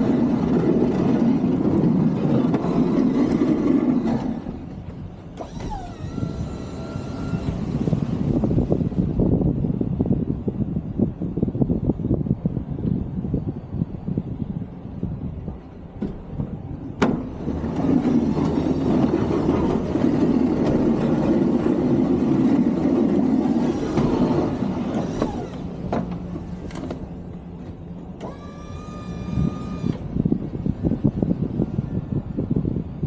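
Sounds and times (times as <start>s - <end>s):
snow plow truck working: 0.0s - 9.5s, 14.9s - 33.0s
short electric whine: 28.2s - 30.1s.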